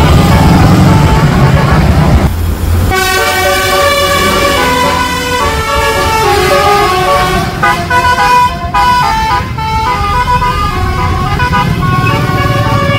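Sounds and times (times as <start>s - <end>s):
bus engine rumble: 0.0s - 12.9s
multi-tone air horn tune: 2.9s - 12.9s.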